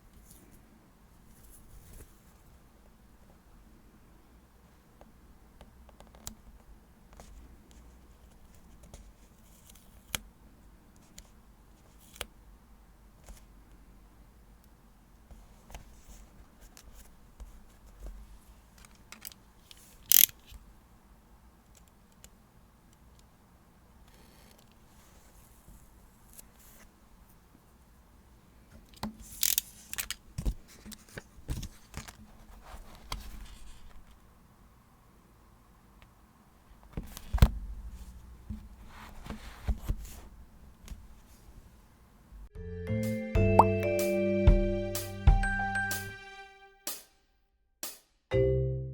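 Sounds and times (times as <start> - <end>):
light taps and paper rustles: 28.7 - 34.2, 36.8 - 41.7
paper rustling: 37.0 - 41.6.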